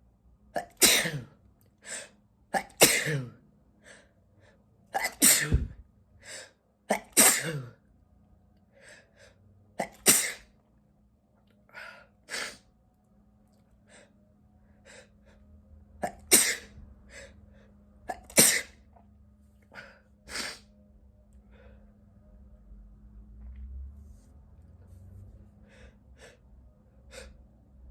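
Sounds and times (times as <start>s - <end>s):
man sneezing: 0.6s - 1.3s, 2.6s - 3.4s, 5.0s - 5.8s, 6.9s - 7.7s, 9.8s - 10.5s, 16.0s - 16.7s, 18.1s - 18.8s.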